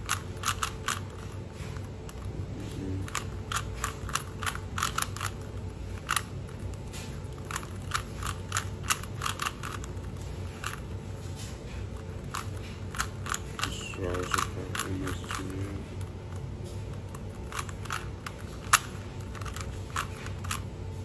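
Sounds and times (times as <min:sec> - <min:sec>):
steady low hum: 0:00.0 - 0:21.0
puzzle cube layers clicking: 0:03.0 - 0:05.4, 0:07.4 - 0:09.9.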